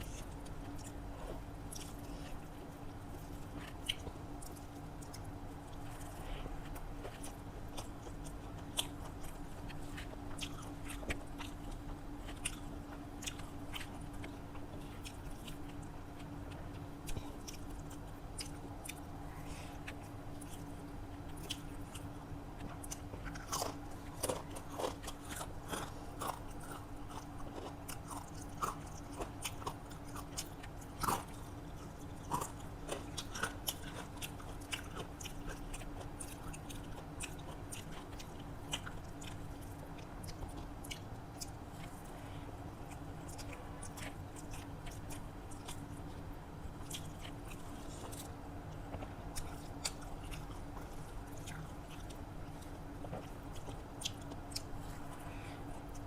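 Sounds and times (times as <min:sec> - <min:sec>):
person chewing crunchy food: 0:00.0 - 0:56.0
steady low hum: 0:00.0 - 0:56.0.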